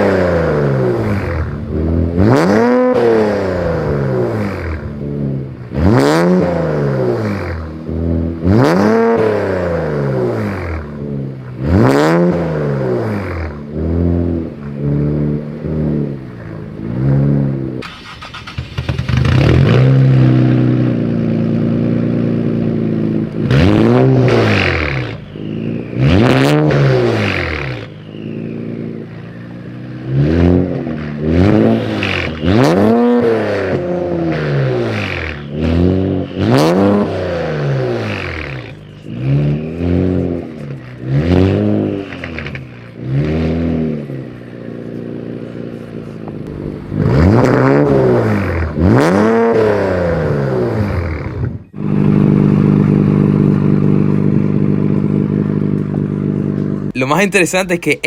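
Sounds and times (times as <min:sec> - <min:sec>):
car engine revving: 0:00.0 - 0:58.0
car engine idling: 0:09.7 - 0:49.0, 0:51.2 - 0:58.0.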